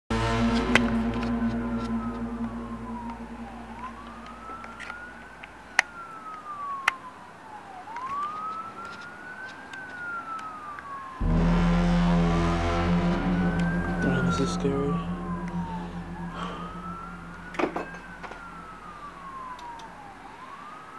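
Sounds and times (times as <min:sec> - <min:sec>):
low droning tone: 0:00.0 - 0:05.6, 0:11.2 - 0:20.3
siren-like wailing tone: 0:00.0 - 0:06.8, 0:11.2 - 0:20.6.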